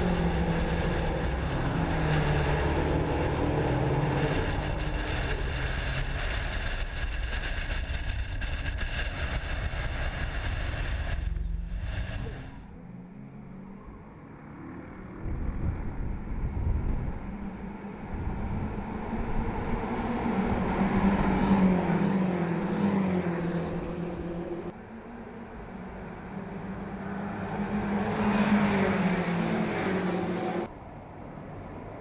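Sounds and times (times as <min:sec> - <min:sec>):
car engine pulling hard: 0:00.0 - 0:12.4.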